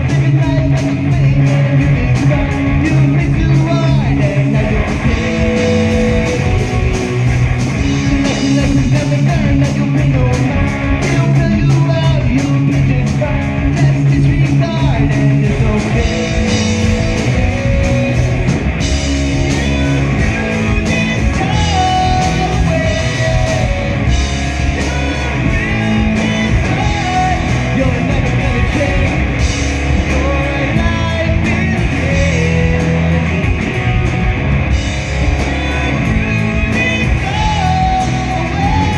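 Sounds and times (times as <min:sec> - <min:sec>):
person singing: 0:00.0 - 0:33.9, 0:35.3 - 0:38.9
live rock band: 0:00.0 - 0:38.9.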